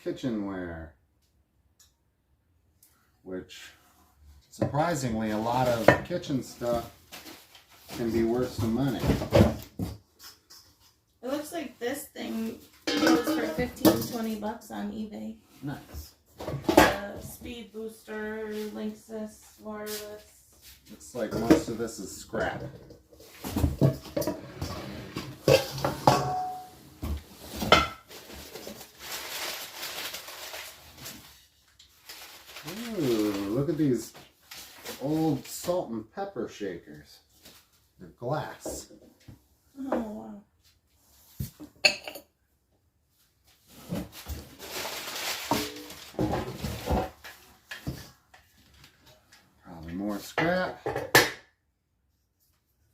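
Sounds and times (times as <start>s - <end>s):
rustling through household items: 3.8s - 36.0s, 37.0s - 42.2s, 43.1s - 51.0s
objects knocking and thudding: 7.2s - 10.8s, 12.8s - 14.3s, 15.8s - 17.6s, 21.2s - 28.9s, 43.8s - 49.2s, 50.4s - 51.5s
glass kitchenware clinking: 12.9s - 13.7s, 25.5s - 26.8s, 41.8s - 42.3s
soft rummaging rustle: 17.0s - 21.4s, 26.4s - 35.7s, 43.2s - 49.6s.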